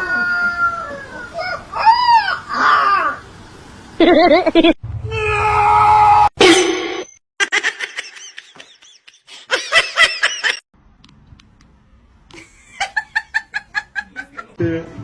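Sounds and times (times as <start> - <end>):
high-pitched laughter: 0.0 - 3.0, 4.0 - 4.8.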